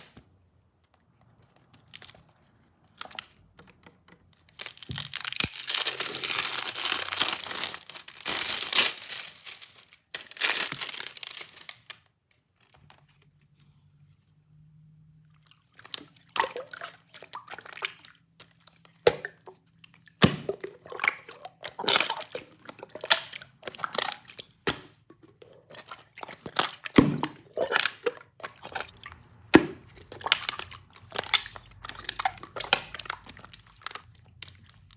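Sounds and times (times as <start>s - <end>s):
crisp crunching and chewing: 4.4s - 12.9s, 25.4s - 34.9s
packaging crinkling and tearing: 4.4s - 12.9s, 26.5s - 34.9s.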